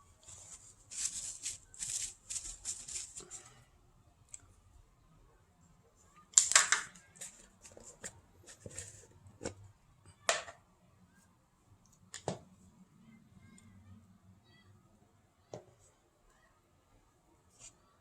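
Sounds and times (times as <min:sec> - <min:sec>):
plastic scraping rustle: 0:00.2 - 0:03.5
plastic parts clicking and knocking: 0:06.3 - 0:07.4.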